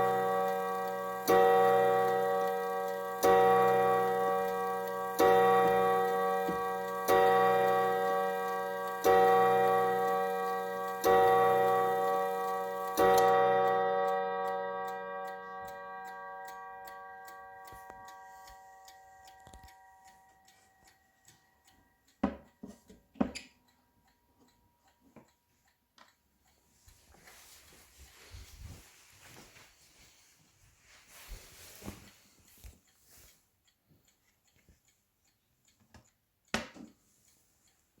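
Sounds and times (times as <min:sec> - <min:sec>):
clock chime striking: 0:00.0 - 0:21.0
clock ticking: 0:00.0 - 0:29.4, 0:31.8 - 0:38.0.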